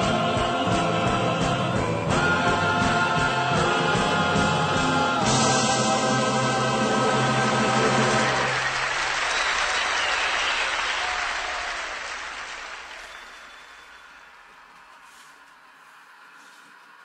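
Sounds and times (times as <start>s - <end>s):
held music chord: 0.0s - 8.6s
audience applause: 7.2s - 14.8s.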